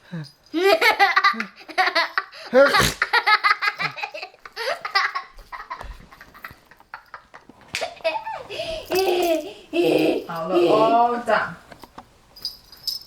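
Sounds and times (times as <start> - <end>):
adult sneezing: 2.6 - 3.1
young child laughing: 2.6 - 10.9.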